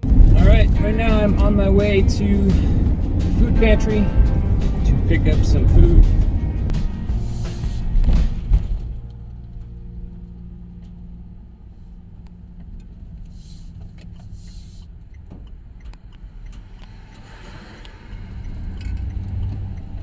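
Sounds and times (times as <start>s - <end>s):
road noise: 0.0s - 20.0s
van engine rumble: 0.0s - 20.0s.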